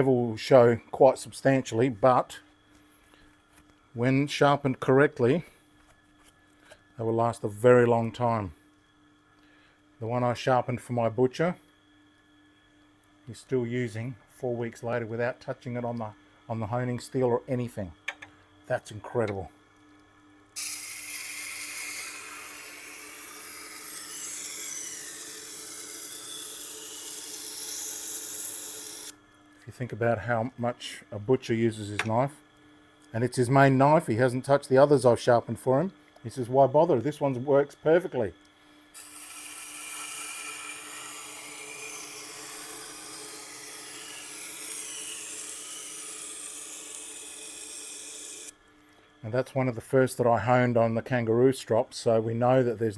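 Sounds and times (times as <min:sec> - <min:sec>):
motor hum: 0:15.9 - 0:49.0
knife grinding on sharpening wheel: 0:20.6 - 0:29.1, 0:39.0 - 0:48.5.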